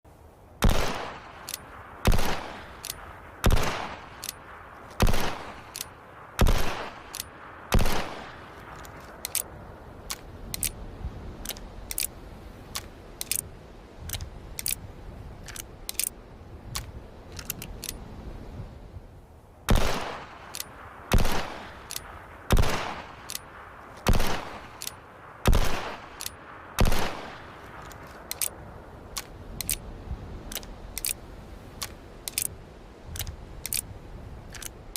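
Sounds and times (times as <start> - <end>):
light metallic clicks: 1.2 - 3.0, 3.9 - 7.4, 8.5 - 10.8, 11.4 - 18.1, 20.2 - 22.1, 23.0 - 33.9, 34.5 - 34.9.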